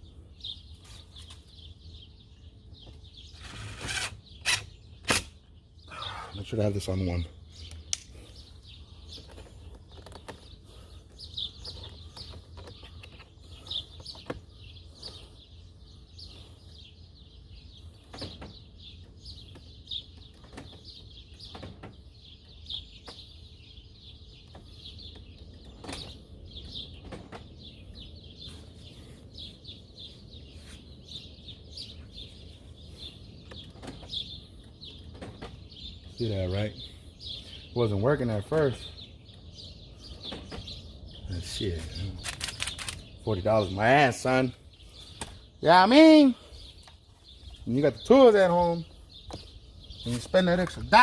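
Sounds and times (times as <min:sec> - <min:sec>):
small birds chirping: 0:00.0 - 0:51.0.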